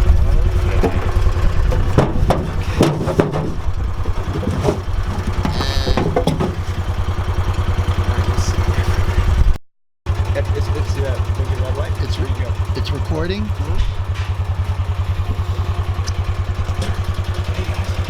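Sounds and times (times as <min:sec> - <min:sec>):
vehicle engine idling: 0:00.0 - 0:18.0
knocks and clatters: 0:00.1 - 0:07.0, 0:16.1 - 0:18.0.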